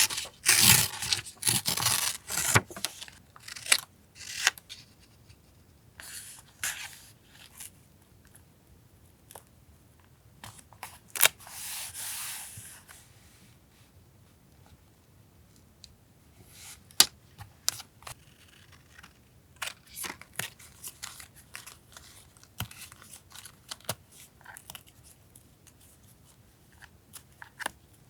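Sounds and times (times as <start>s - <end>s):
paper rustling and rubbing: 0.0s - 4.9s.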